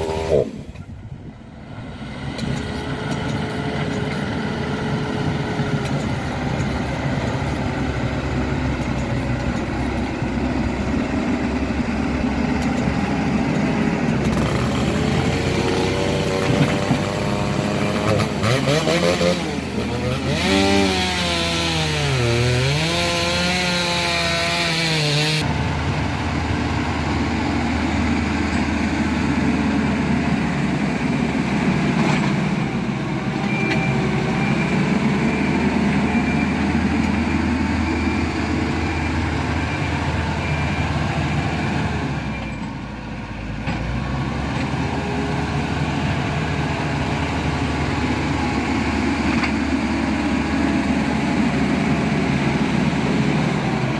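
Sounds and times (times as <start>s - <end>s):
heavy diesel machinery running: 0.0s - 53.9s
reversing alarm beeping: 33.4s - 41.3s.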